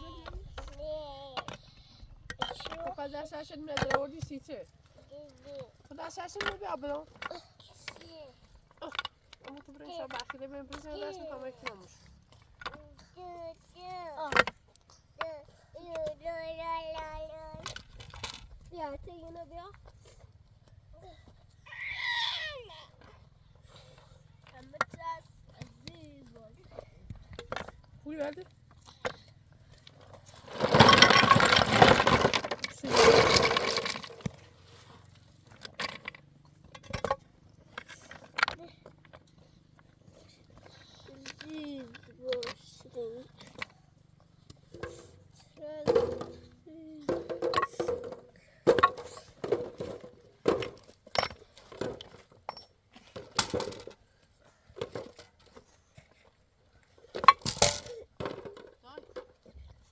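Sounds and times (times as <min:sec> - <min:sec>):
hard objects knocking together: 0:29.0 - 0:34.4, 0:45.8 - 0:54.0, 0:57.0 - 0:59.6
demolition debris crunching: 0:30.4 - 0:34.3.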